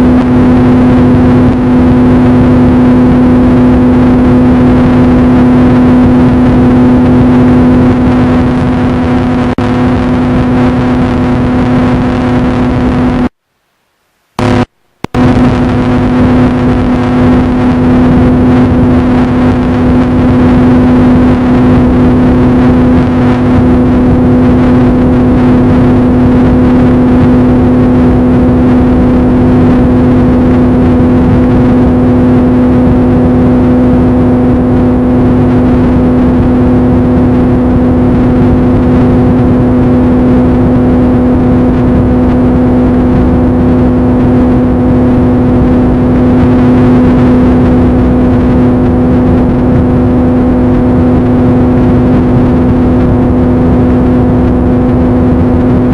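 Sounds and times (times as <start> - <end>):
loud steady hum: 0.0 - 55.9
rushing noise: 14.4 - 55.9.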